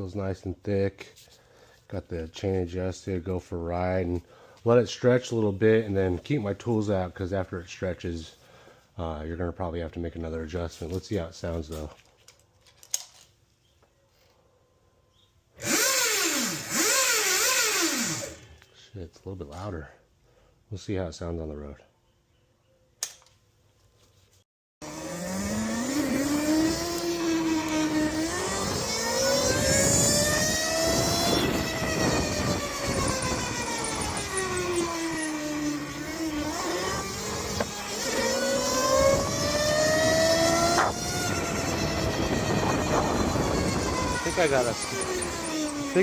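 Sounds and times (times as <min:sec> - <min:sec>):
electric motor and chain whine: 0:15.6 - 0:18.6, 0:24.8 - 0:46.0
wind and road noise: 0:24.8 - 0:46.0.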